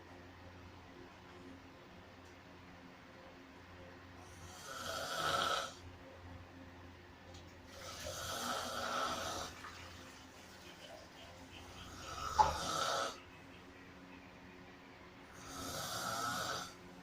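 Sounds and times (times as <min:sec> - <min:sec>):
person snoring loudly: 0:04.3 - 0:05.8, 0:07.7 - 0:09.6, 0:12.0 - 0:13.2, 0:15.3 - 0:16.8.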